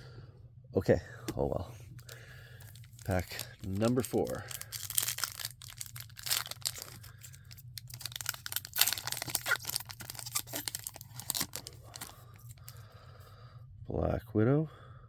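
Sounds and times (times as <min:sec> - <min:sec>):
wrapper tearing and crinkling: 0:02.0 - 0:12.6.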